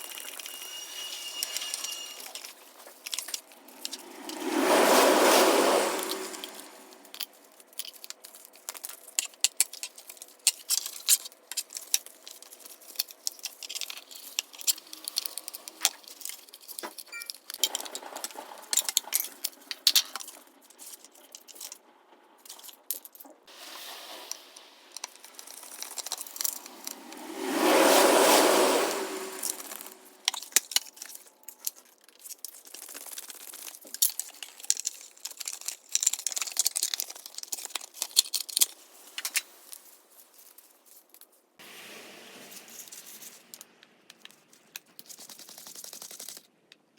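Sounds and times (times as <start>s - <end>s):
small hard parts clicking: 0.0s - 4.0s, 7.0s - 21.8s, 22.4s - 23.5s, 24.9s - 27.0s, 29.8s - 39.8s
whirring: 0.0s - 7.2s, 23.8s - 30.6s.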